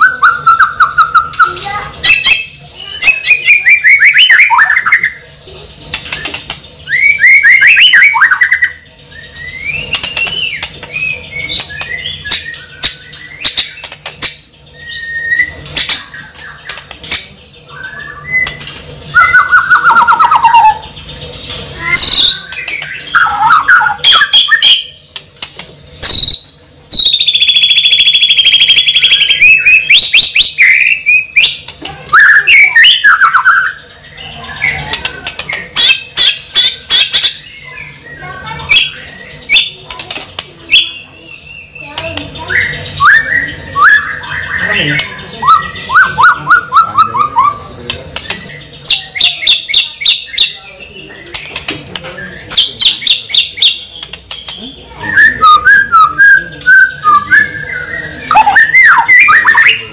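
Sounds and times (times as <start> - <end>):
bird chirping and squeaking: 0.0 - 59.9
bird clicks: 25.1 - 25.8, 39.9 - 40.6, 51.3 - 52.1, 54.0 - 54.6
long bird whistle: 26.0 - 30.5.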